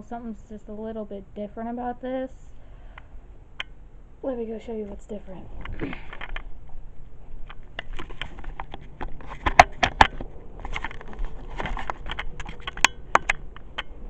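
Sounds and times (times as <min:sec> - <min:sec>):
handling clicks and rustles: 0:05.6 - 0:14.0.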